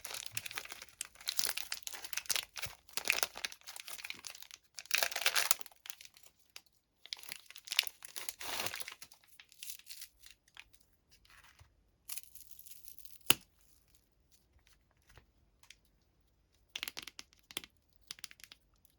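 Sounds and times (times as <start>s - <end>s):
plastic wrappers crinkling and tearing: 0.0s - 10.7s.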